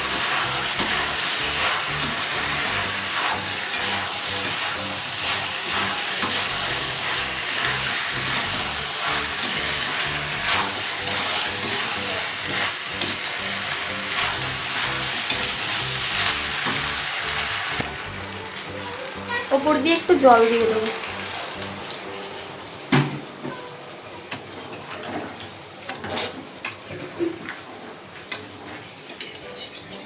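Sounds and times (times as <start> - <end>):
chicken sizzling in a pan: 0.0 - 22.6
spatula scraping a pan: 0.1 - 13.4, 29.2 - 30.0.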